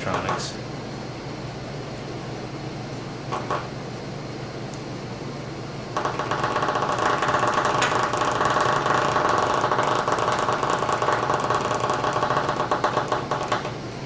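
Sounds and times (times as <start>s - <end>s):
controller rumble motor rattling: 6.0s - 13.7s.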